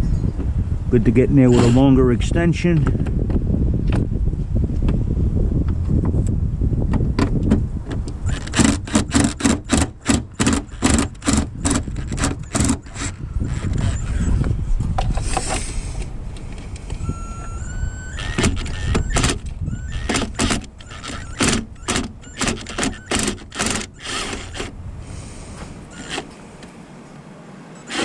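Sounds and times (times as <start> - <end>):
tool whine: 8.2 - 14.6, 16.7 - 26.4, 27.8 - 28.0
ratchet clacking: 8.3 - 14.1, 17.8 - 24.7, 25.9 - 26.3.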